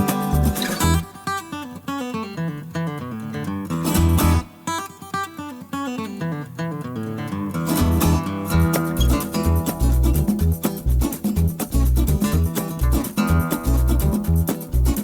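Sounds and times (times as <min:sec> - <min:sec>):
low bass line: 0:00.0 - 0:01.0, 0:08.5 - 0:15.0
plucked acoustic guitar: 0:00.0 - 0:15.0.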